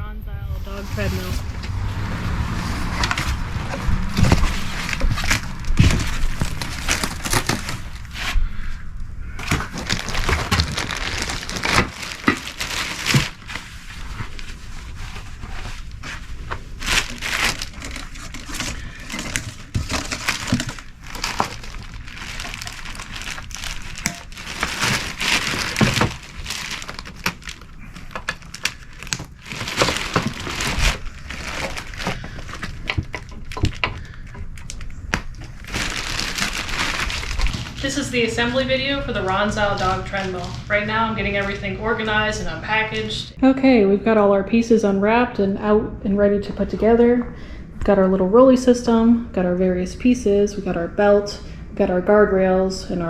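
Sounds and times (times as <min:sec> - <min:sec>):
packaging crinkling and rustling: 0:02.8 - 0:42.3.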